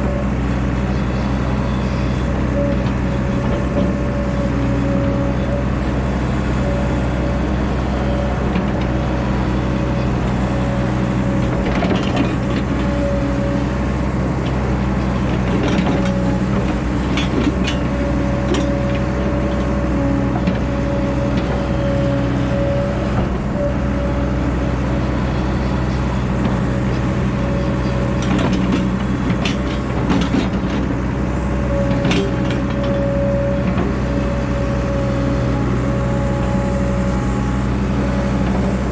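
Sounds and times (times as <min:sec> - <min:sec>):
diesel engine running: 0:00.0 - 0:38.9
metallic clanks and knocks: 0:15.2 - 0:19.7, 0:27.8 - 0:31.0, 0:31.9 - 0:33.0.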